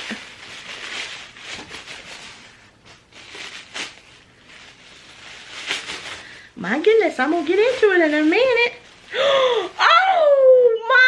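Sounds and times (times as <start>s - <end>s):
wrapping paper crinkling and rustling: 0.0s - 10.4s.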